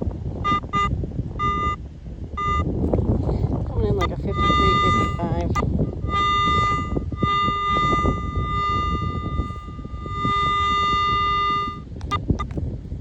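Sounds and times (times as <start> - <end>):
wind buffeting microphone: 0.0 - 13.0
metal detector high tone: 0.4 - 1.8, 2.4 - 2.7, 3.8 - 12.5
metal detector lower tone: 0.4 - 1.8, 2.4 - 2.7, 3.8 - 12.5.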